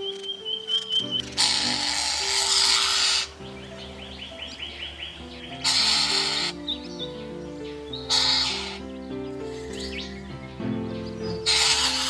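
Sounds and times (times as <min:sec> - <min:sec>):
background music: 0:00.0 - 0:12.0
harsh rasping buzz: 0:01.3 - 0:03.4, 0:11.4 - 0:12.0.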